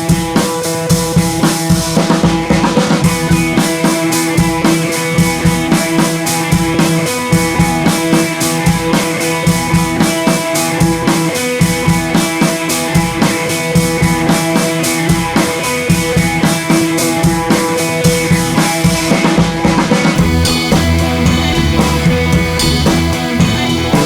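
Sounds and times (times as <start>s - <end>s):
rock music with drum beat: 0.0s - 24.0s
heavy bass line: 20.2s - 24.0s.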